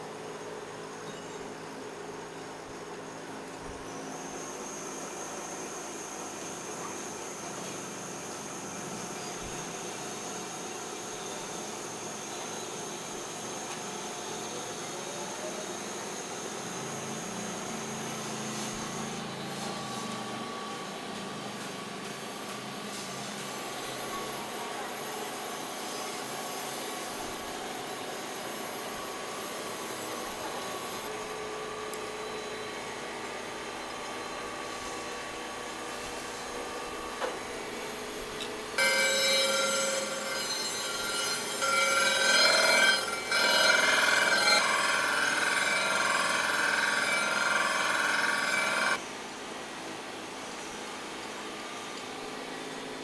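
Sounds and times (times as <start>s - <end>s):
workshop background noise: 0.7s - 53.0s
power tool whining: 36.3s - 49.0s.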